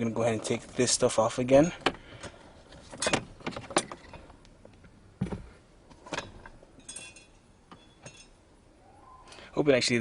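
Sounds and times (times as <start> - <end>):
clicks and knocks of parts handled: 1.8 - 8.3
dull thump: 5.2 - 5.5.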